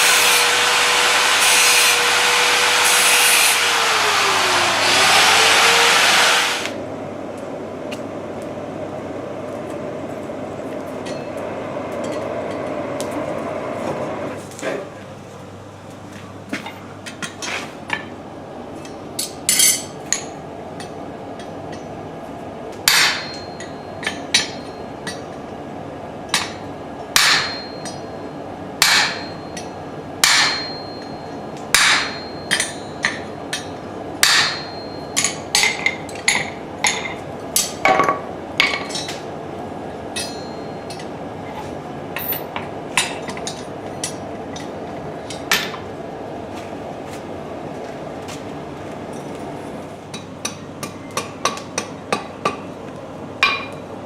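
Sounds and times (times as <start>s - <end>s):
hammer striking steel on anvil: 22.9s - 25.3s, 26.3s - 28.1s, 28.8s - 39.2s, 40.1s - 41.1s, 50.1s - 52.6s, 53.4s - 53.8s.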